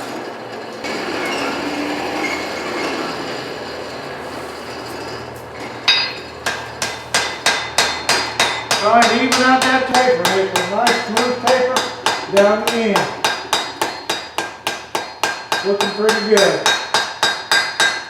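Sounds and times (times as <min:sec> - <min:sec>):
hammer striking steel on anvil: 0:05.9 - 0:18.0.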